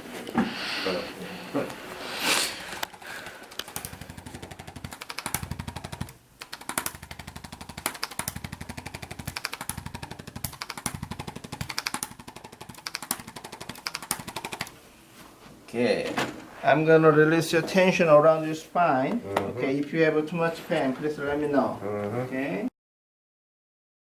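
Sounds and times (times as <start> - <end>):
percussion massager pulsing: 2.6 - 14.7.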